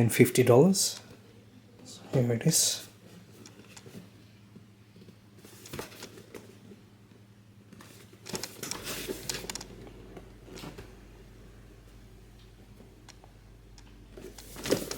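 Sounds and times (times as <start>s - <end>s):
packaging rustling and crinkling: 14.2s - 14.9s.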